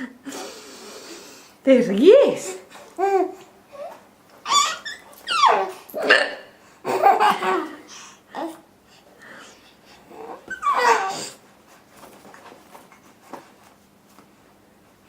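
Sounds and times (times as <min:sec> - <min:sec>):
baby laughing: 0:03.0 - 0:08.6, 0:10.2 - 0:11.3
woman hiccuping: 0:06.0 - 0:06.6.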